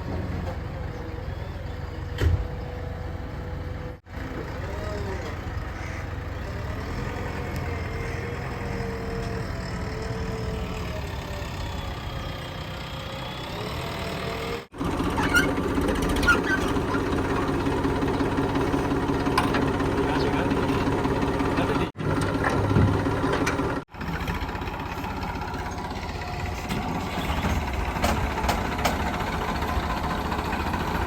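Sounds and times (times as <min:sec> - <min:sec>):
heavy diesel engines running: 0:00.0 - 0:31.0.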